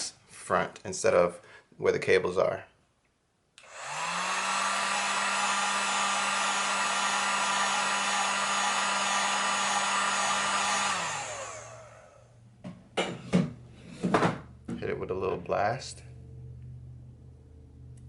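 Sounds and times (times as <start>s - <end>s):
heat gun blowing: 3.6s - 12.3s.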